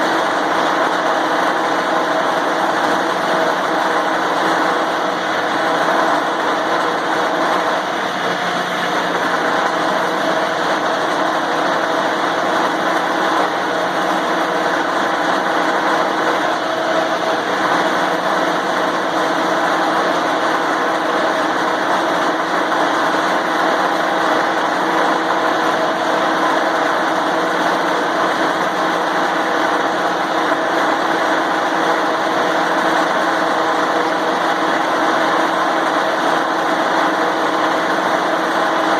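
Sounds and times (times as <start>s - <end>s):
grinder motor running: 1.5s - 21.9s.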